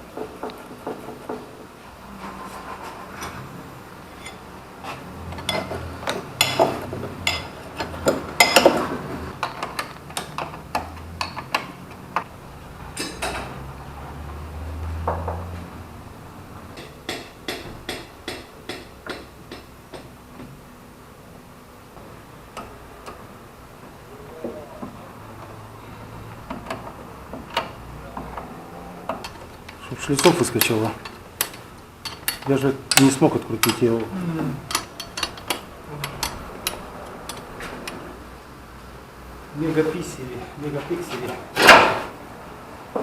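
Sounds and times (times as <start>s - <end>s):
metal tools clinking and knocking: 5.3s - 11.7s, 29.1s - 33.9s, 34.7s - 38.1s.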